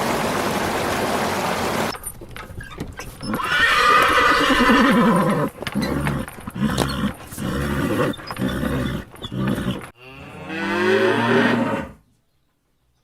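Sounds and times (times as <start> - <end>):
cow mooing: 3.3 - 12.0.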